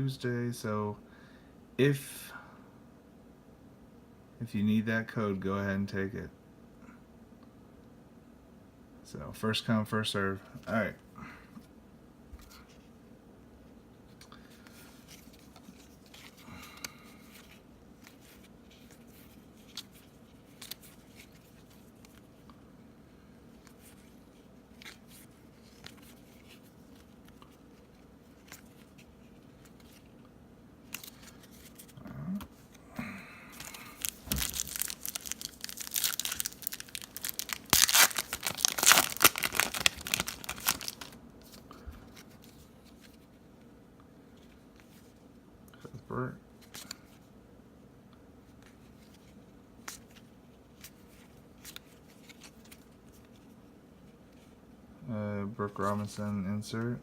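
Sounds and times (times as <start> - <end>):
foil wrapper tearing and crinkling: 33.6 - 41.2.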